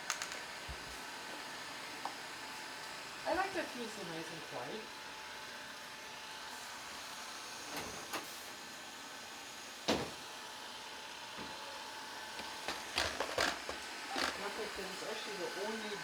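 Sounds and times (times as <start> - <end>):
robot vacuum humming: 10.3 - 16.0.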